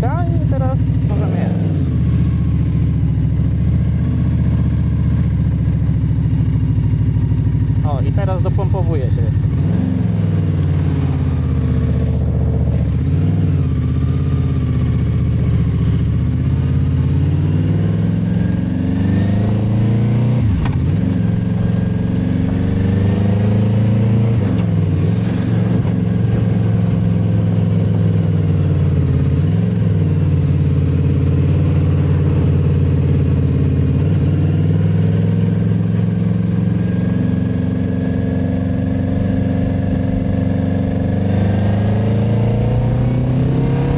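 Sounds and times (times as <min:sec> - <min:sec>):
motorcycle engine revving through gears: 0:00.0 - 0:43.9.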